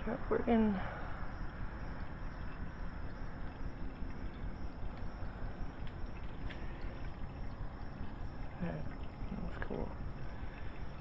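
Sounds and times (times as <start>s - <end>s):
water rushing through filter: 0.0s - 11.0s
faint ticks: 2.0s - 8.3s.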